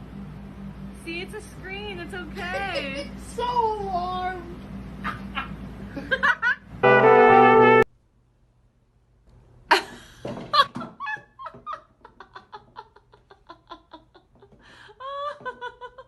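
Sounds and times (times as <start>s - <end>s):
dog yelping: 5.0s - 5.6s
loud steady tone: 6.8s - 7.9s.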